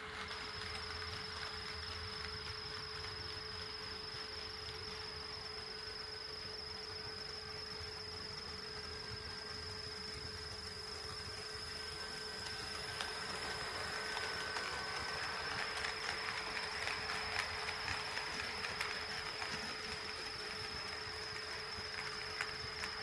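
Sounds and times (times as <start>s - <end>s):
high-pitched whine: 0.0s - 23.0s
model train running: 0.0s - 23.0s.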